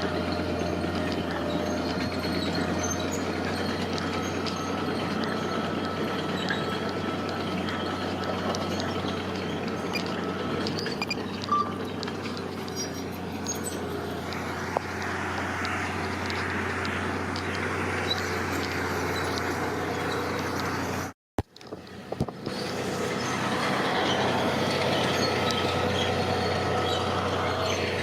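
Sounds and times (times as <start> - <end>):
diesel engine hum: 0.0 - 28.0
small knocks and clicks: 6.5 - 20.8, 21.4 - 22.6.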